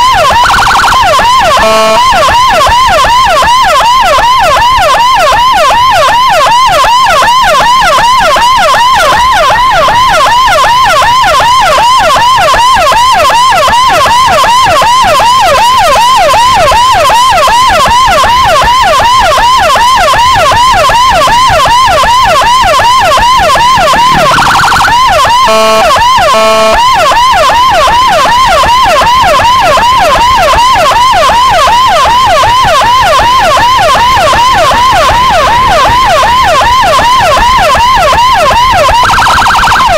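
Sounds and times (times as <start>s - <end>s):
siren yelping: 0.0s - 39.9s
steady siren tone: 0.0s - 39.9s
horn blasts: 1.6s - 2.2s, 23.1s - 27.0s.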